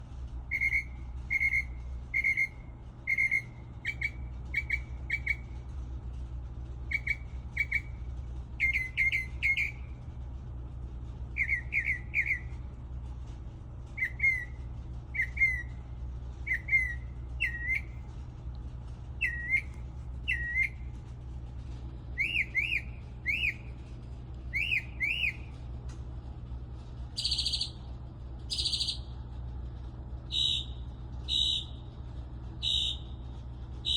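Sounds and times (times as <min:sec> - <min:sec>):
steady low hum: 0:00.0 - 0:33.9
bird singing whistled notes: 0:00.5 - 0:05.5, 0:06.9 - 0:08.0, 0:08.6 - 0:09.9, 0:11.4 - 0:12.5, 0:14.0 - 0:15.8, 0:16.4 - 0:18.0, 0:19.2 - 0:20.9, 0:22.2 - 0:23.8, 0:24.5 - 0:25.5, 0:27.2 - 0:27.8, 0:28.5 - 0:29.1, 0:30.3 - 0:31.8, 0:32.6 - 0:33.2.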